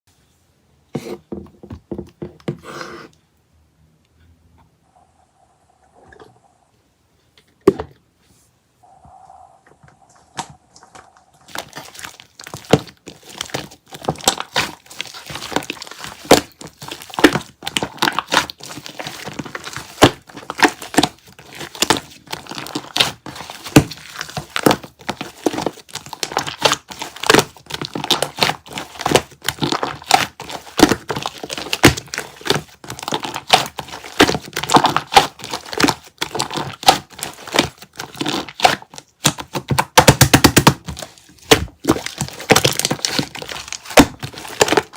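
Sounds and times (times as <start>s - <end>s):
slime clicking and crackling: 10.4s - 44.9s.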